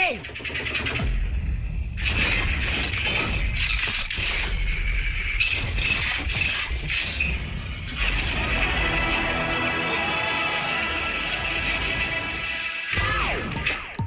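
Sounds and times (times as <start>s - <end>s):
loud sudden crashing: 7.8s - 13.2s.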